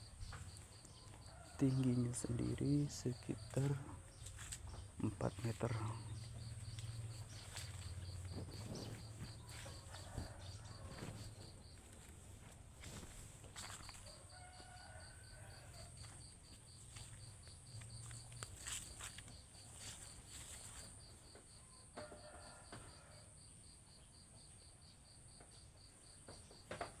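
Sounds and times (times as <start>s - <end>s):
insects buzzing: 0.0s - 21.4s.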